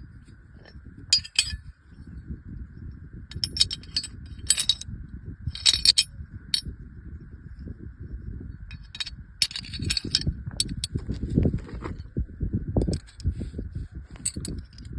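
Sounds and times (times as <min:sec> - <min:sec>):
pistol parts clicking metallically: 0:01.2 - 0:01.6, 0:03.3 - 0:04.8, 0:05.6 - 0:06.1.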